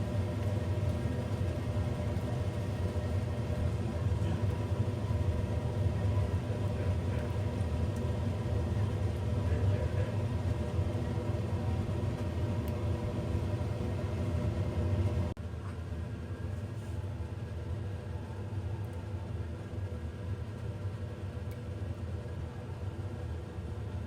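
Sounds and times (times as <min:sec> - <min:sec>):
low mechanical hum: 0:00.0 - 0:24.0.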